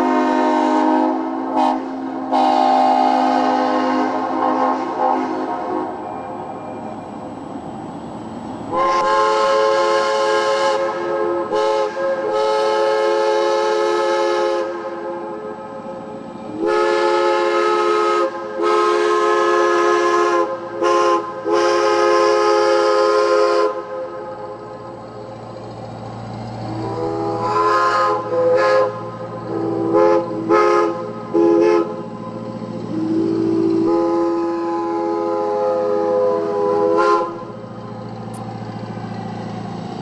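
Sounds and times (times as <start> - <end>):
locomotive air horn blasts: 0.0 - 6.1, 8.7 - 15.9, 16.5 - 24.5, 26.7 - 32.1, 32.9 - 37.6.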